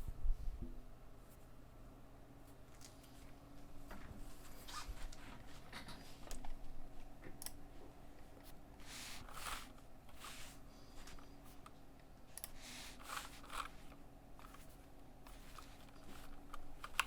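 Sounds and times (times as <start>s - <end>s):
mechanical keyboard typing: 12.4s - 17.0s.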